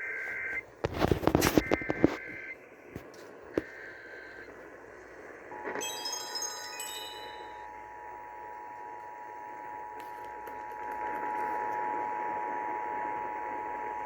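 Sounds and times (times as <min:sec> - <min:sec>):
radio static hiss: 0:00.1 - 0:05.8
two-tone alarm signal: 0:05.5 - 0:08.4.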